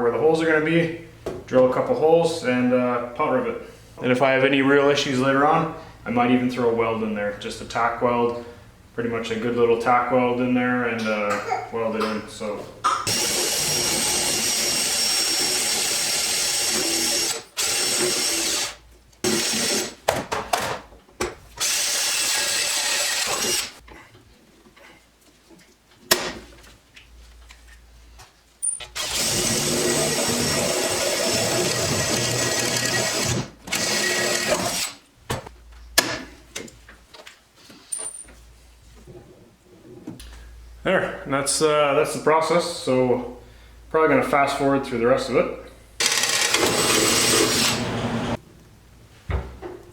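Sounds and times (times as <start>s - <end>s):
power drill boring through metal: 13.1s - 20.0s, 21.6s - 23.8s, 29.0s - 35.0s, 46.0s - 48.4s.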